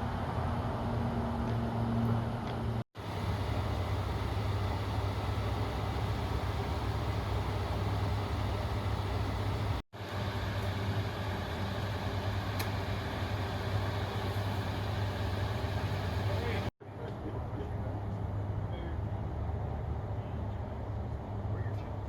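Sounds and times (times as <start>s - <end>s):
large vehicle engine humming: 0.0s - 16.7s
outdoor noise: 0.0s - 22.0s.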